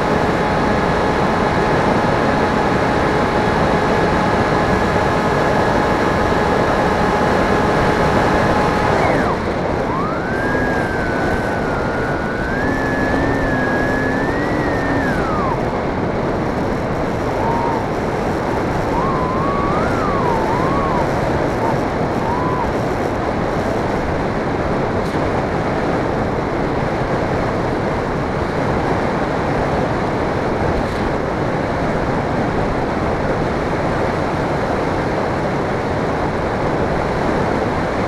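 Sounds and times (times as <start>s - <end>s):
electric motor whining: 0.0s - 24.1s
wind noise: 0.0s - 38.0s.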